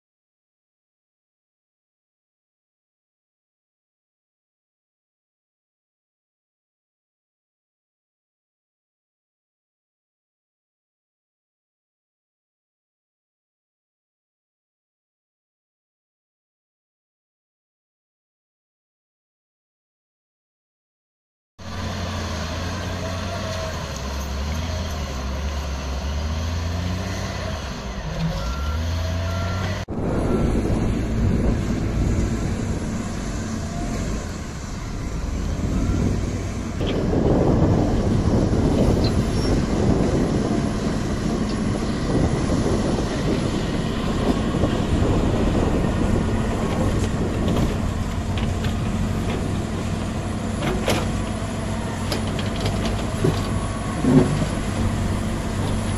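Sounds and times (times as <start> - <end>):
heavy diesel machinery engines: 21.6 - 55.9.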